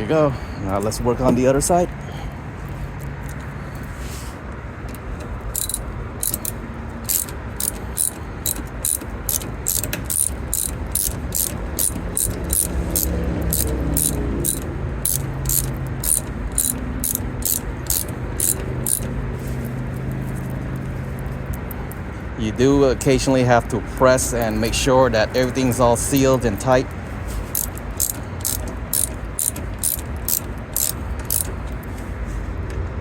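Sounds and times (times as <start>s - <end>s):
ratchet wrench clicking: 4.9s - 22.1s, 24.3s - 32.1s.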